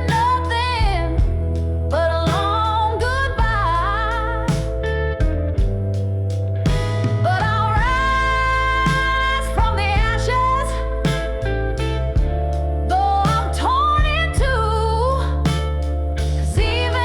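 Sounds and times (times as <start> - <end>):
steady bass line: 0.0 - 17.0
slow drum beat: 0.1 - 1.7, 4.5 - 12.7, 15.5 - 17.0.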